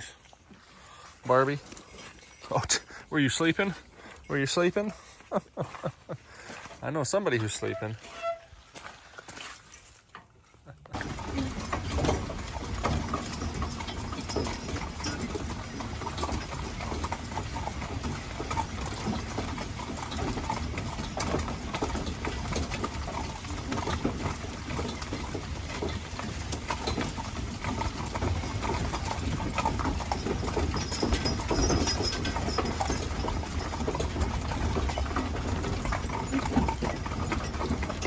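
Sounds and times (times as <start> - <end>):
horse hooves clip-clopping: 0.0 - 9.6, 10.9 - 38.0
wagon low rumble: 10.9 - 38.0.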